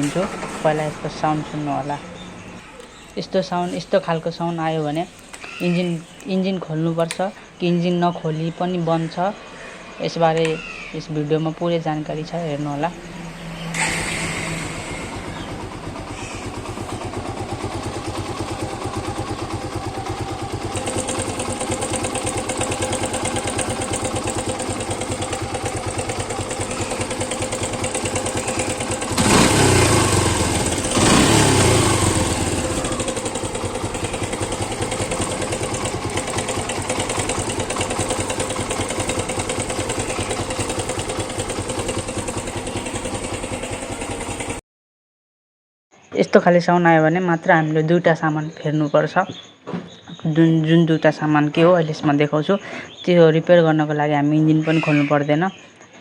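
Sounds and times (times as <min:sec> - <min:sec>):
motorcycle engine idling and revving: 0:00.0 - 0:07.6, 0:08.4 - 0:44.6.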